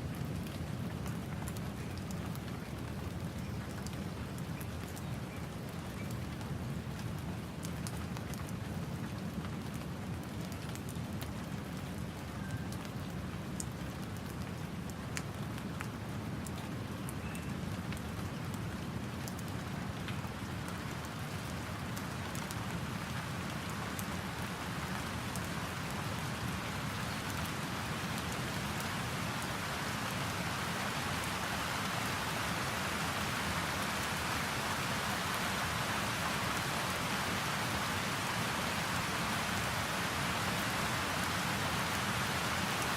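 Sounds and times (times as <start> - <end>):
rain falling: 0.0 - 42.9
ocean surf rumble: 26.4 - 42.9.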